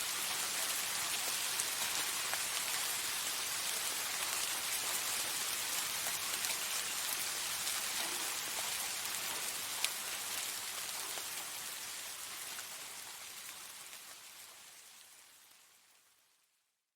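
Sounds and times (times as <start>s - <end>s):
soft rain falling: 0.0s - 16.9s.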